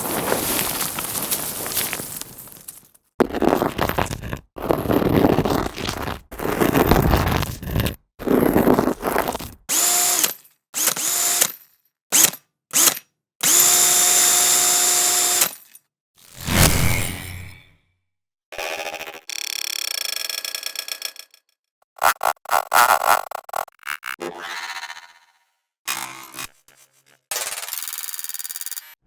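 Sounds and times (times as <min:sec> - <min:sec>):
power drill whirring: 0:09.7 - 0:11.6, 0:12.2 - 0:15.5
deep hit effect: 0:16.4 - 0:17.7.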